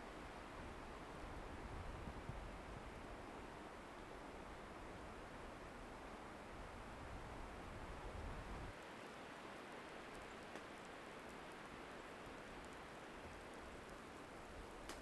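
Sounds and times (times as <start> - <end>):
wind rumble on microphone: 0.5 - 3.3, 6.5 - 8.8
faint scattered ticks: 8.7 - 15.0.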